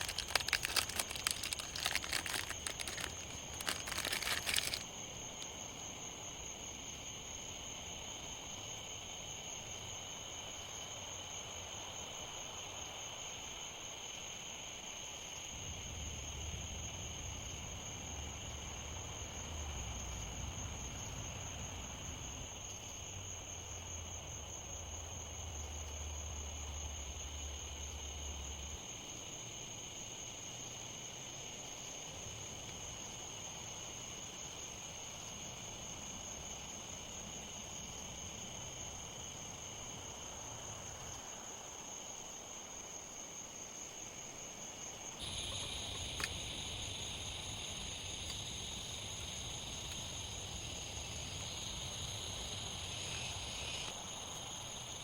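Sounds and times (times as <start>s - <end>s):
crinkling and crackling: 0.0s - 4.9s
insect chorus trilling: 0.0s - 13.1s, 15.4s - 55.0s
rain hiss: 45.2s - 55.0s.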